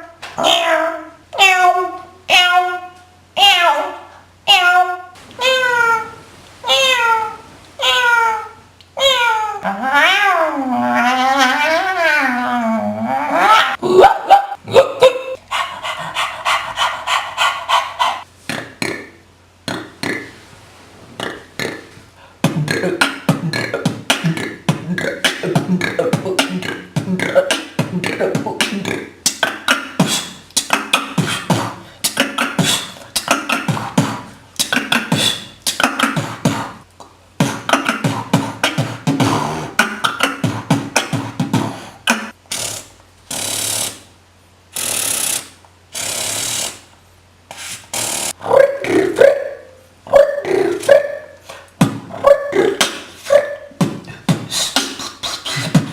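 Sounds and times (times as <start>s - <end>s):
person beatboxing: 15.8s - 19.1s, 21.2s - 44.1s, 44.8s - 46.9s, 47.5s - 49.4s, 50.4s - 55.9s.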